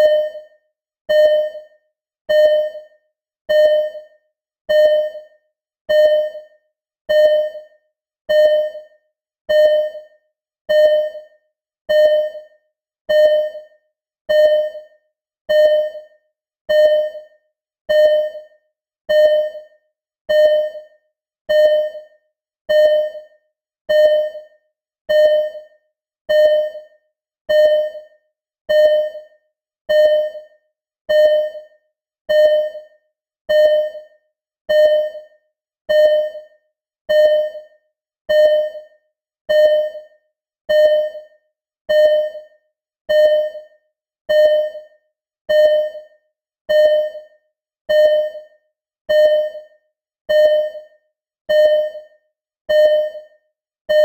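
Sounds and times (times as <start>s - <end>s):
heart monitor beeping: 0.0s - 0.5s, 1.1s - 1.7s, 2.3s - 2.9s, 3.5s - 4.1s, 4.7s - 5.3s, 5.9s - 6.5s, 7.1s - 7.7s, 8.3s - 8.9s, 9.5s - 10.1s, 10.7s - 11.3s, 11.9s - 12.5s, 13.1s - 13.7s, 14.3s - 14.9s, 15.5s - 16.1s, 16.7s - 17.3s, 17.9s - 18.5s, 19.1s - 19.7s, 20.3s - 20.9s, 21.5s - 22.1s, 22.7s - 23.3s, 23.9s - 24.5s, 25.1s - 25.7s, 26.3s - 26.9s, 27.5s - 28.1s, 28.7s - 29.3s, 29.9s - 30.5s, 31.1s - 31.7s, 32.3s - 32.9s, 33.5s - 34.1s, 34.7s - 35.3s, 35.9s - 36.5s, 37.1s - 37.7s, 38.3s - 38.9s, 39.5s - 40.1s, 40.7s - 41.3s, 41.9s - 42.5s, 43.1s - 43.7s, 44.3s - 44.9s, 45.5s - 46.1s, 46.7s - 47.3s, 47.9s - 48.5s, 49.1s - 49.7s, 50.3s - 53.3s.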